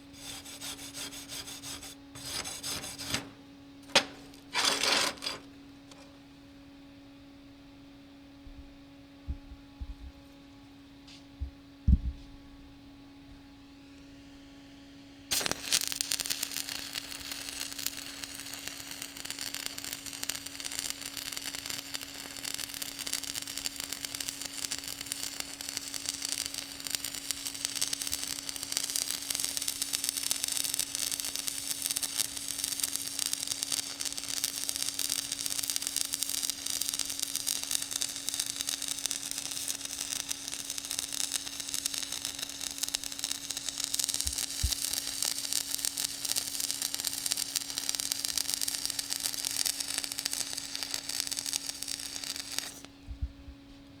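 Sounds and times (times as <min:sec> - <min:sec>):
welding arc crackling: 0:00.0 - 0:06.0, 0:14.0 - 0:53.0
constant hum: 0:00.0 - 0:27.3, 0:51.8 - 0:54.0.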